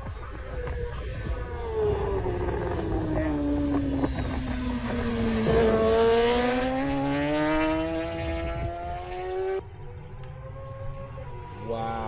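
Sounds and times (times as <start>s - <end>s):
racing motorcycle engine accelerating: 0.0s - 12.0s.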